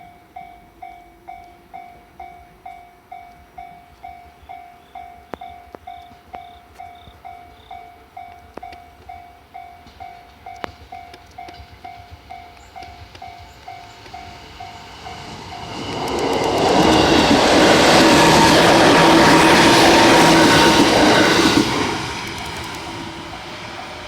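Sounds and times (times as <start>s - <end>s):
level crossing warning bell: 0.0s - 21.6s
sharp clicks: 22.2s - 23.0s.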